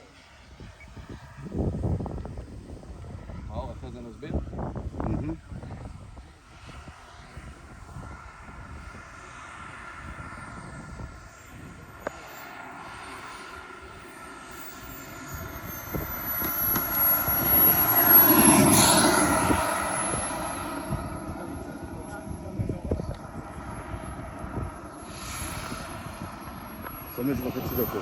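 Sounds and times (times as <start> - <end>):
model jet turbine whine: 0.0 - 28.0.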